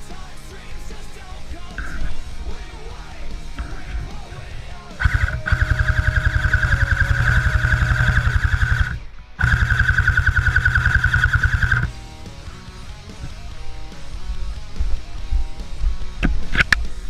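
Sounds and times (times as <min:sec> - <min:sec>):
gearbox whine: 0:00.0 - 0:17.0
airsoft gun firing full auto: 0:05.0 - 0:11.9.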